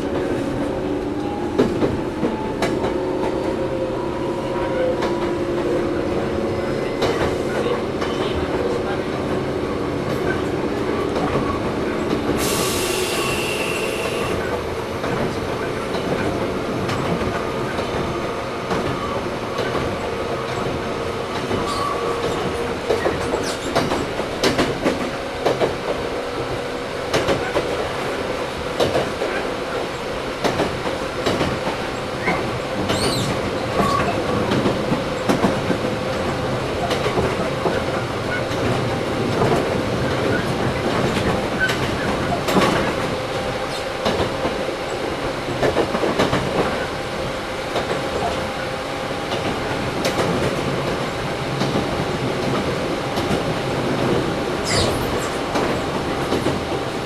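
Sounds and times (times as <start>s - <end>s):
electric train motor and gear hum: 0.0s - 57.0s
wheels clacking over rail joints: 30.4s - 47.0s.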